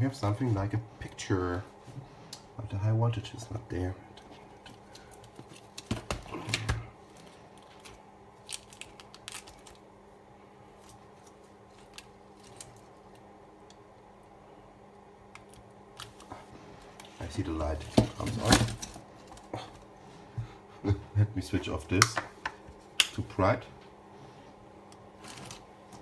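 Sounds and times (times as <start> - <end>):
faint steady hum: 0.0 - 26.0
clicks and rustles of laptop parts: 4.2 - 9.8, 10.8 - 13.2.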